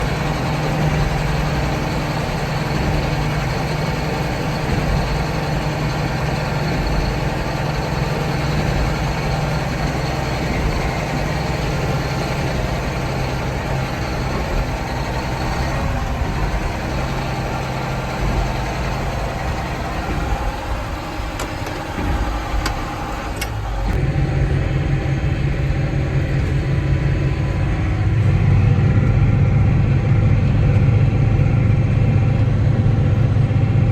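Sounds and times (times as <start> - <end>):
engine humming: 0.0 - 33.9.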